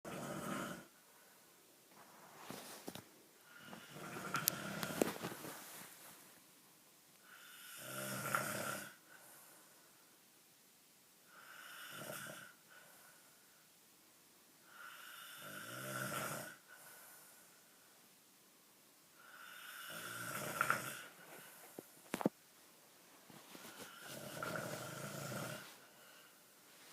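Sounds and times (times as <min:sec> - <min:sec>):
loud snoring: 0:00.1 - 0:00.9, 0:03.5 - 0:05.0, 0:07.4 - 0:09.0, 0:11.4 - 0:12.6, 0:14.8 - 0:16.6, 0:19.4 - 0:21.1, 0:23.9 - 0:25.7
quiet breathing: 0:00.1 - 0:06.5, 0:07.1 - 0:10.3, 0:11.2 - 0:13.9, 0:14.6 - 0:18.2, 0:19.1 - 0:26.9.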